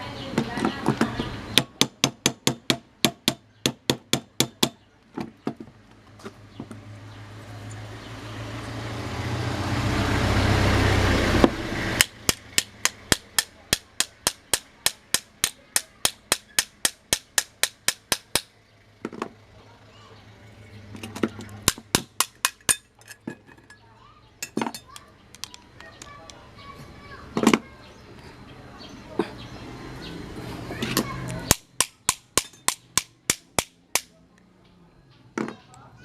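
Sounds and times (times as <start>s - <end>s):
hammer tapping metal: 12.0s - 18.5s, 21.6s - 23.7s, 31.5s - 34.1s.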